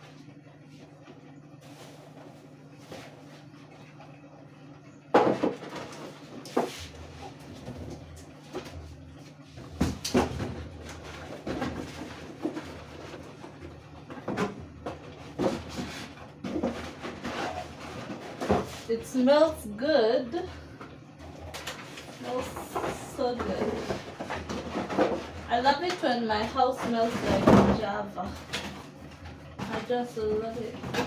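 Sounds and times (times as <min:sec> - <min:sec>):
low steady hum: 0:00.0 - 0:31.0
kitchen items knocking and clattering: 0:09.6 - 0:19.2, 0:21.4 - 0:31.0.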